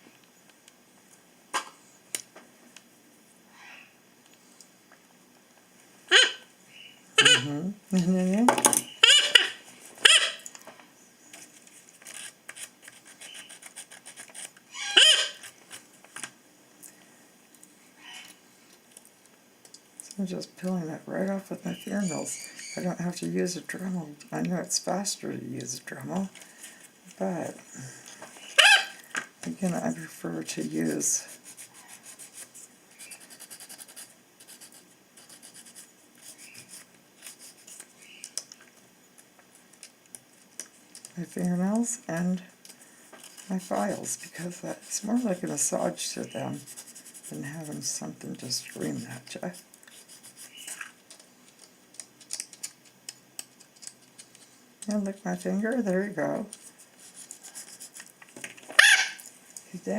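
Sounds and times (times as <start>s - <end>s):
parrot squawking: 3.5s - 3.9s, 6.1s - 7.5s, 8.9s - 10.5s, 14.7s - 15.4s, 28.4s - 29.0s, 58.8s - 59.3s
nail file rasping on beak: 12.9s - 15.5s, 31.3s - 37.8s
faint scraping and clicking: 48.4s - 59.7s.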